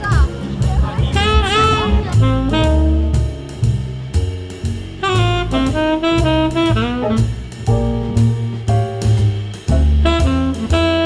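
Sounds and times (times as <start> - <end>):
saxophone melody: 0.0 - 3.3, 5.0 - 7.4, 10.0 - 11.0
bass: 0.0 - 11.0
drum kit: 0.0 - 11.0.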